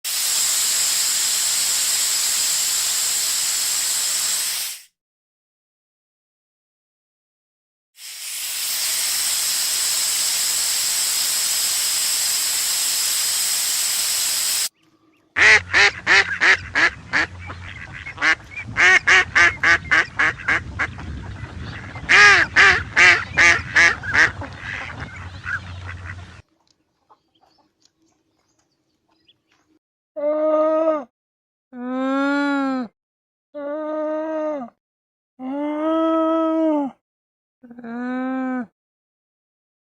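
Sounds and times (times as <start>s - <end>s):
steady hiss: 0.1s - 4.9s, 8.0s - 14.7s
duck quacking: 15.4s - 26.4s.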